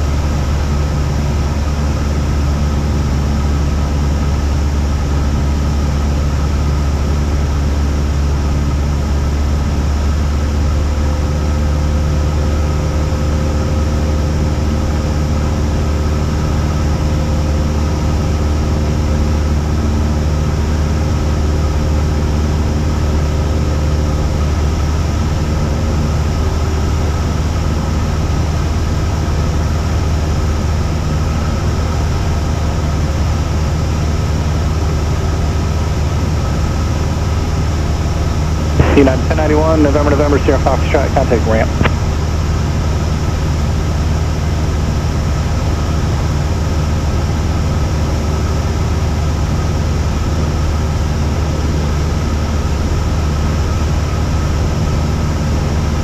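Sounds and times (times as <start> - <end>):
propeller plane engine droning: 0.0 - 56.0.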